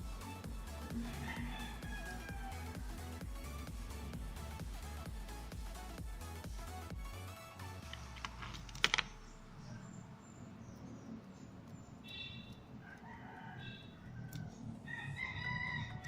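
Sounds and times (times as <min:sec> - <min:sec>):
bird calls: 0:09.0 - 0:12.7.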